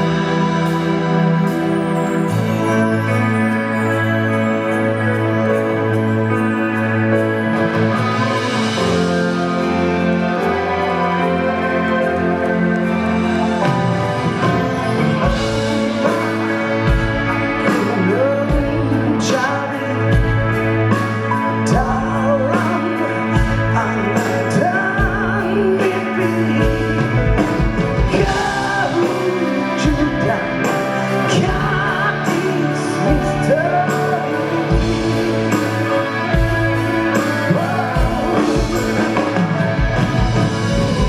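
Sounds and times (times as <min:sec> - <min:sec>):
band playing a song: 0:00.0 - 0:41.0
person singing: 0:00.0 - 0:41.0
steady drum beat: 0:12.1 - 0:41.0.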